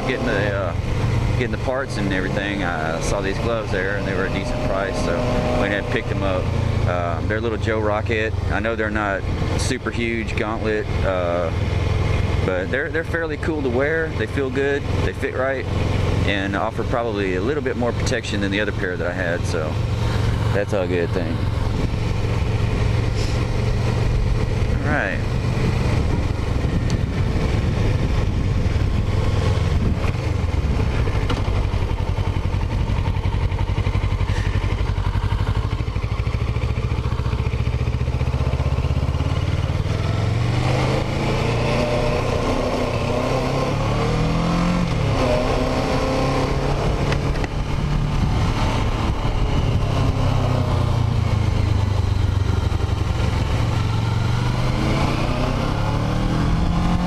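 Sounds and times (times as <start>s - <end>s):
motorcycle engine revving: 0.0s - 57.0s
wind noise: 24.0s - 32.0s, 46.7s - 52.3s.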